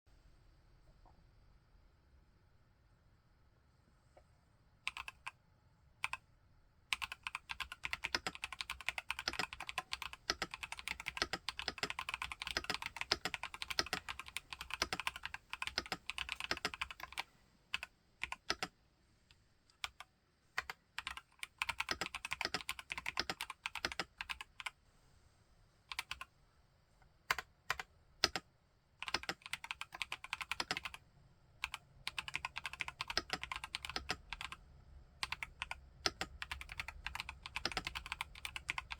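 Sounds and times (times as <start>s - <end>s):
typing on mechanical keyboard: 4.9s - 5.4s, 6.9s - 18.7s, 19.8s - 24.8s, 25.9s - 26.3s, 27.3s - 28.4s, 29.0s - 31.0s, 31.6s - 34.6s, 35.2s - 38.9s.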